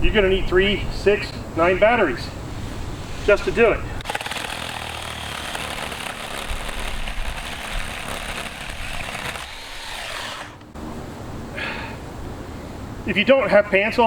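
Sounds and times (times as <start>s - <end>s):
chainsaw cutting wood: 4.0s - 10.8s.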